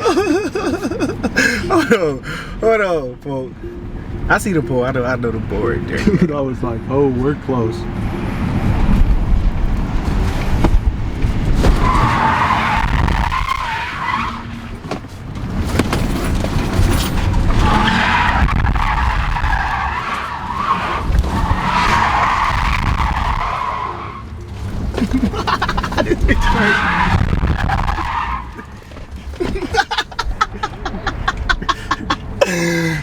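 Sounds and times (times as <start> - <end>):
car engine rumbling: 0.0 - 33.0
tyres squealing: 11.7 - 33.0.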